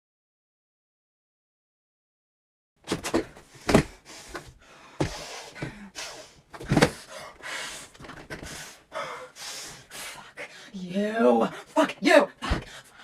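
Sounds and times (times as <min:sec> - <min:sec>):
person gasping and breathing heavily: 0:02.9 - 0:13.0.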